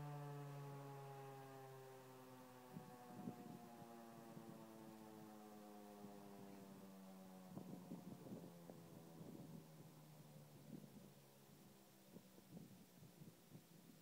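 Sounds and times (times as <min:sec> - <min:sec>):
tornado siren wail: 0:00.0 - 0:11.1.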